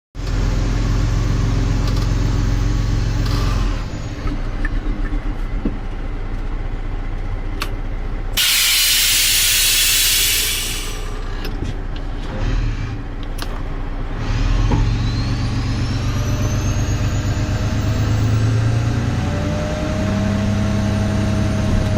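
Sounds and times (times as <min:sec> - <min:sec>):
truck diesel engine running: 0:00.2 - 0:19.2
compressed air hissing: 0:08.4 - 0:11.2.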